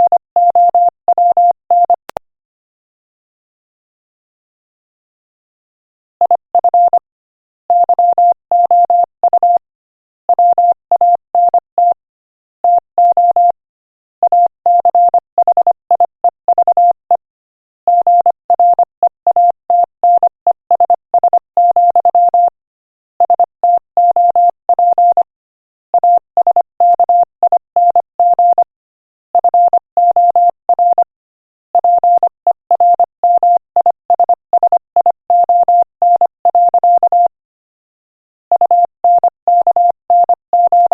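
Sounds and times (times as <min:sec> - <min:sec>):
morse code beeps: 0:06.3 - 0:07.0, 0:07.7 - 0:09.6, 0:14.2 - 0:17.0, 0:17.9 - 0:22.5, 0:23.2 - 0:25.3, 0:26.0 - 0:28.7, 0:29.4 - 0:31.1, 0:31.8 - 0:37.3, 0:38.5 - 0:40.9.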